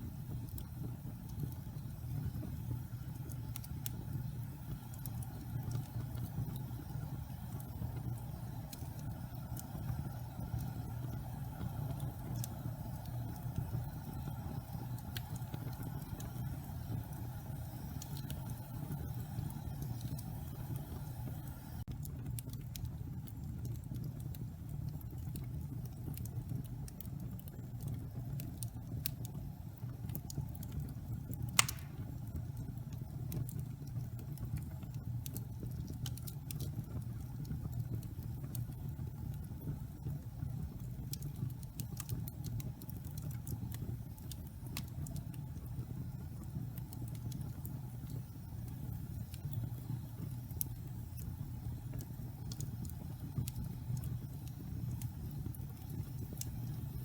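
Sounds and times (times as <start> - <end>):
fire rumbling and crackling: 0.0 - 57.0
loud pop from fire: 31.6 - 32.2.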